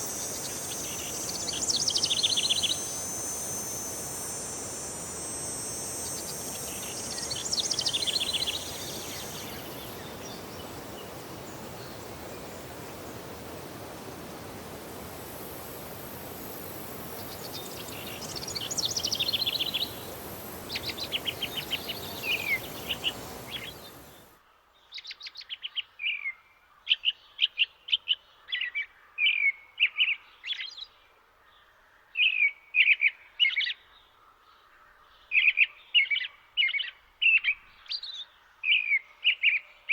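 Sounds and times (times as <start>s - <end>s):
songbirds chirping: 0.0s - 24.3s
steady rushing noise: 0.0s - 24.3s.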